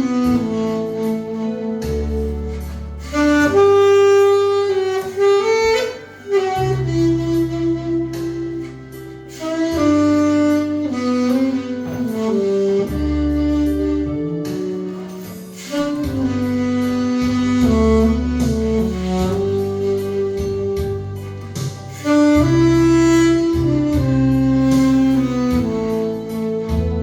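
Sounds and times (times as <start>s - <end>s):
slow instrumental music: 0.0s - 27.0s.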